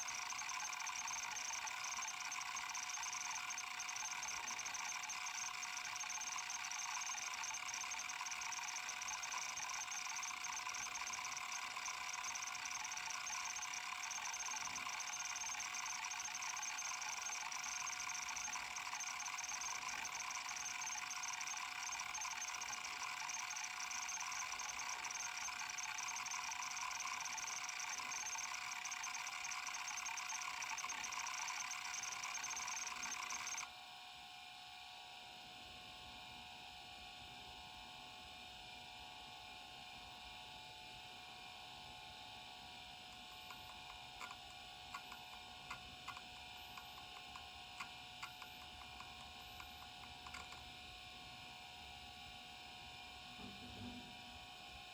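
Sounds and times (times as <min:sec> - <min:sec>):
hard drive stepper chattering: 0:00.0 - 0:33.7, 0:43.0 - 0:51.4
steady hum: 0:43.0 - 0:54.9.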